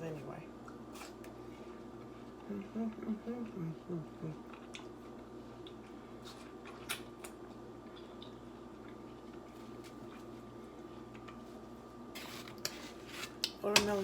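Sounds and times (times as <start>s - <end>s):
steady low hum: 0.0s - 14.0s
person chewing watermelon: 0.6s - 11.6s.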